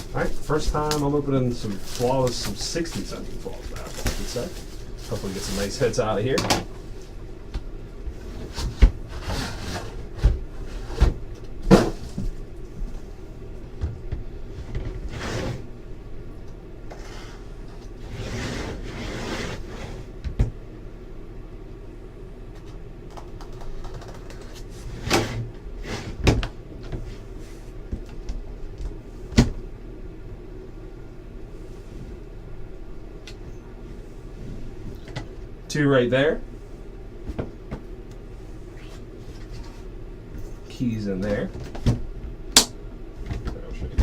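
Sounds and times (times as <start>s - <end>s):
packaging rustling: 0.0s - 6.0s
steady low hum: 0.0s - 44.0s.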